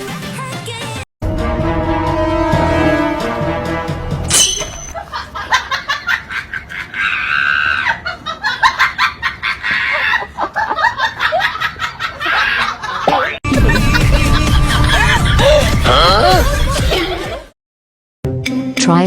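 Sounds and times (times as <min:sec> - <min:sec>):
person laughing hard: 0:05.0 - 0:17.4.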